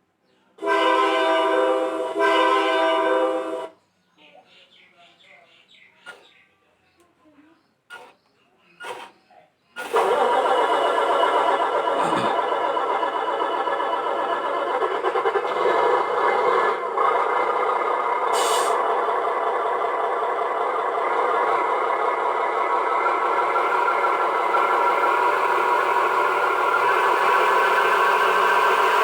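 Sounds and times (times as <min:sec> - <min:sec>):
model truck mechanical drone: 0:09.8 - 0:29.0
short hiss: 0:18.3 - 0:18.8.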